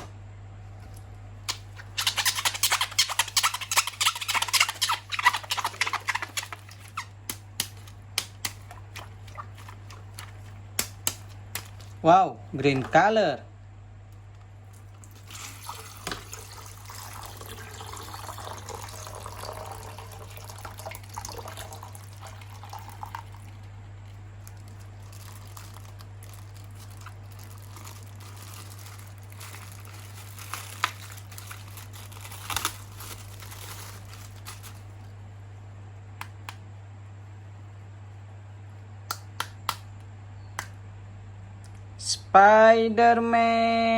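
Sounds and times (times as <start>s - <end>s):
low electrical hum: 0.0s - 43.9s
plastic rustling: 0.7s - 12.9s, 21.2s - 35.2s
water sloshing: 8.6s - 10.6s.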